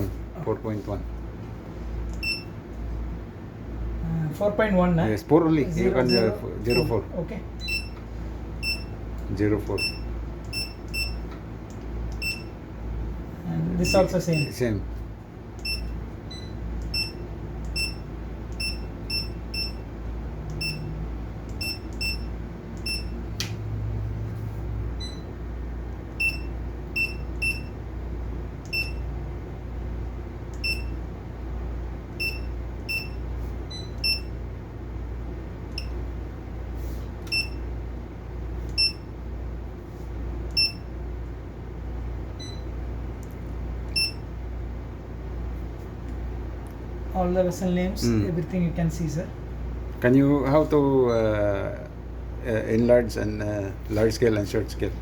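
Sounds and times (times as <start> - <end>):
steady low hum: 0.0 - 55.0
keypad beeps: 2.1 - 2.6, 6.0 - 7.0, 7.6 - 8.0, 8.6 - 8.9, 9.8 - 11.2, 12.1 - 12.6, 13.8 - 14.6, 15.6 - 19.8, 20.5 - 20.9, 21.5 - 23.2, 25.0 - 25.3, 26.2 - 27.7, 28.7 - 29.0, 30.6 - 30.9, 32.2 - 34.3, 37.3 - 37.6, 38.7 - 39.1, 40.5 - 40.9, 42.4 - 42.7, 43.9 - 44.2.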